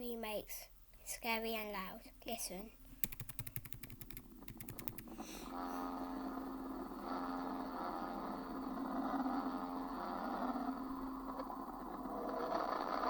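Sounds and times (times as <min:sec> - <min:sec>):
eerie drone of stacked tones: 0:04.4 - 0:13.0.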